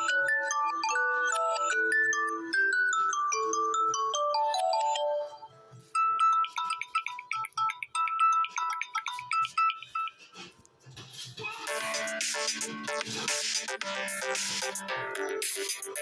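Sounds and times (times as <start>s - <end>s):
phone ringtone melody: 0.0s - 10.3s, 11.6s - 16.0s.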